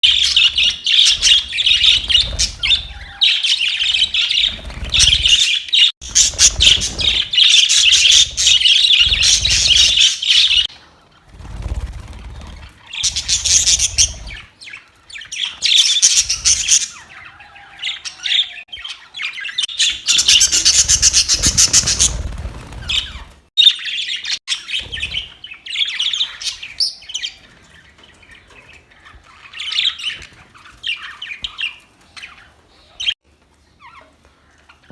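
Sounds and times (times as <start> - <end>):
budgerigars chirping: 0.0 - 10.7, 12.3 - 27.4.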